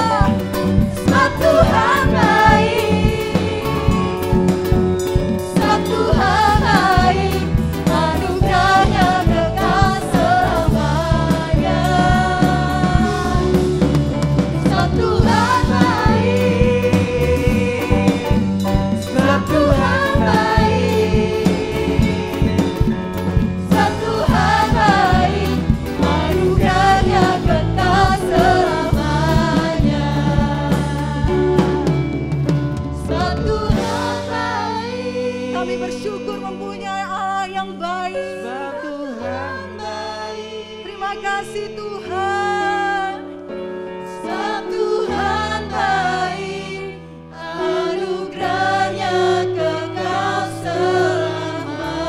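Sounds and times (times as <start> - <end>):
drum kit beat: 0.0 - 36.4.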